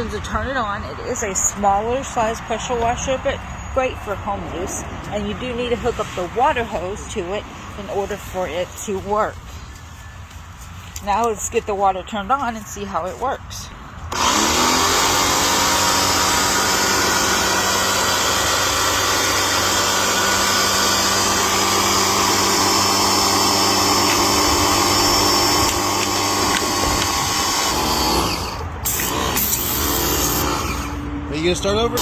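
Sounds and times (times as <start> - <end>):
pressure washer motor and pump: 14.1 - 32.0.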